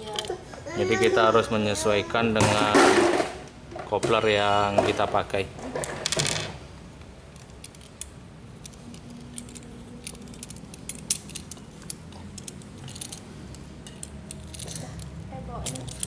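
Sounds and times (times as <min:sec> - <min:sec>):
metal tools clinking: 0:01.8 - 0:06.6, 0:07.3 - 0:16.0.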